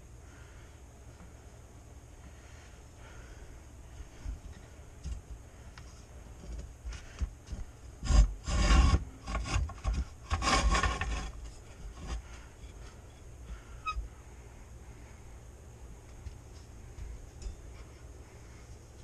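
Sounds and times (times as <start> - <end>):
rubbing and scraping handling noise: 4.1 - 14.2.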